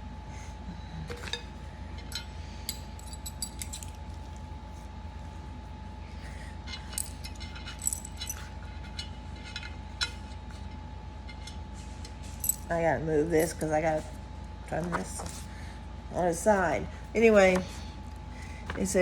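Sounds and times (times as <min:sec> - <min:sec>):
steady low hum: 0:00.0 - 0:19.0
small metal hardware clinking: 0:02.1 - 0:04.4, 0:06.9 - 0:08.5, 0:12.4 - 0:12.7.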